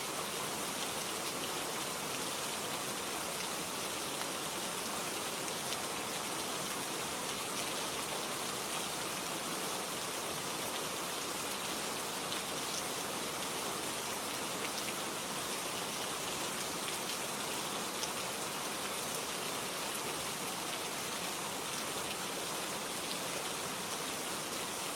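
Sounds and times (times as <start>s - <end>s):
rain falling: 0.0s - 24.9s.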